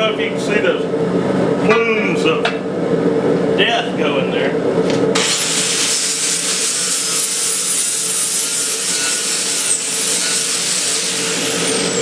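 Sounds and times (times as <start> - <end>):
angle grinder grinding steel: 5.2 - 12.0.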